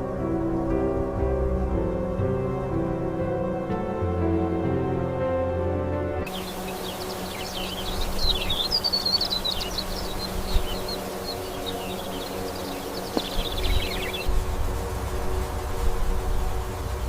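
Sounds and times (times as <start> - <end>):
background hiss: 0.0 - 17.0
small birds chirping: 6.2 - 17.0.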